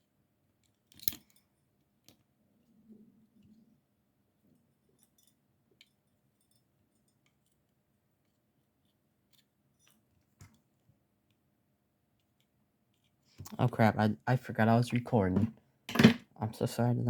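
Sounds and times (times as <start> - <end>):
faint clicks and taps: 5.8 - 11.4.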